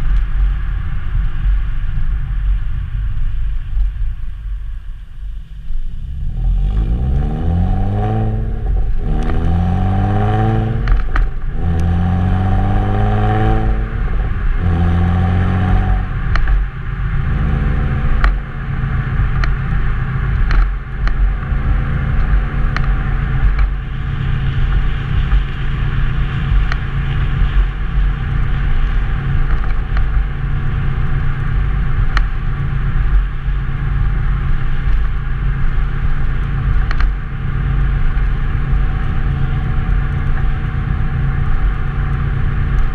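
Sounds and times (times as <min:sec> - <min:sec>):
car exhaust accelerating: 0:00.0 - 0:42.9.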